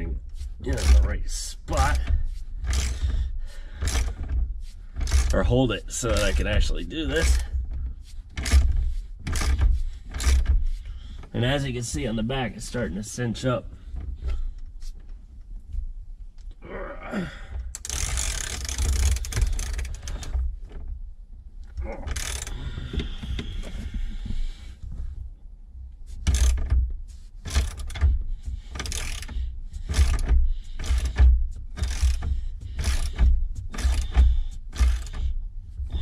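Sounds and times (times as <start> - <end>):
handling and scraping: 0.0 - 16.5, 17.7 - 36.0
ratchet wrench ratcheting: 0.4 - 10.8, 17.7 - 20.7, 22.0 - 23.6, 26.1 - 26.8, 27.4 - 36.0.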